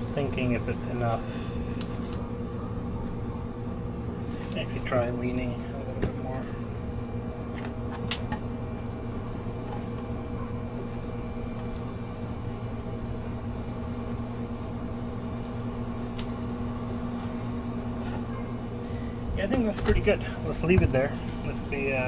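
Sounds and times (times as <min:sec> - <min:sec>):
mechanical hum: 0:00.0 - 0:22.0.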